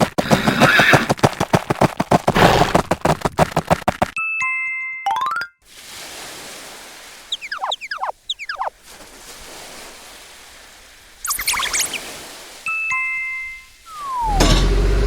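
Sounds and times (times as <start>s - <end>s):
water-like hiss: 5.7s - 15.0s
cartoon falling swoops: 7.3s - 8.7s, 11.2s - 12.1s, 13.9s - 14.6s.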